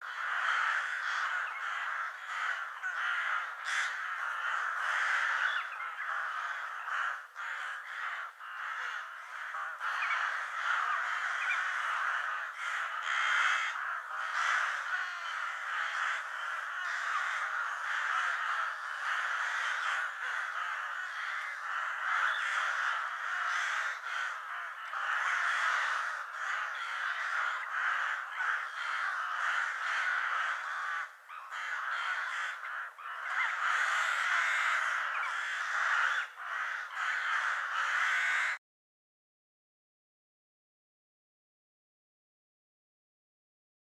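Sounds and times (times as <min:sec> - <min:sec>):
crows cawing: 0:00.0 - 0:38.6.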